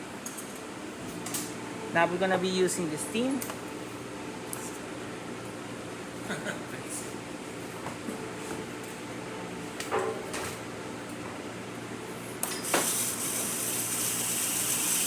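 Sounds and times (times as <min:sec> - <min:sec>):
steam wand hissing: 0:12.8 - 0:15.0.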